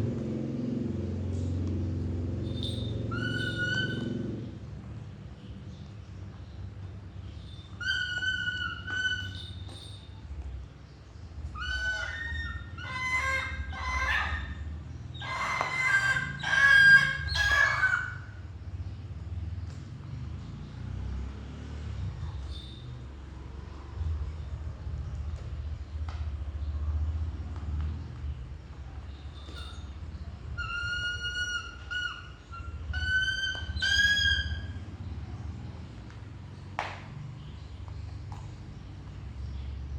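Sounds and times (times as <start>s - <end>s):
bird calling harshly: 2.5s - 4.4s, 7.3s - 10.2s, 11.5s - 18.5s, 29.1s - 35.0s.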